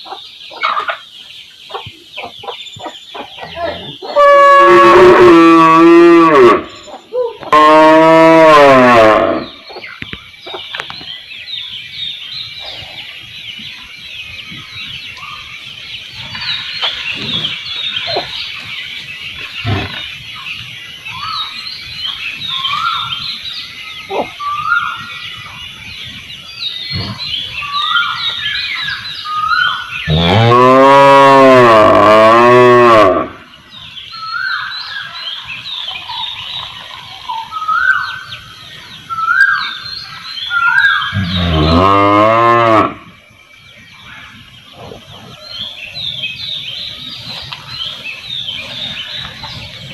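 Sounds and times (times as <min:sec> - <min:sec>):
cow mooing: 0:30.1 - 0:33.3, 0:41.2 - 0:43.0.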